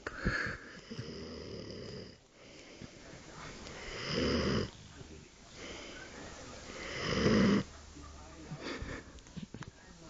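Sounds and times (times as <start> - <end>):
quiet breathing: 0.0 - 10.0
loud snore: 0.8 - 2.2, 3.8 - 4.7, 6.8 - 7.7.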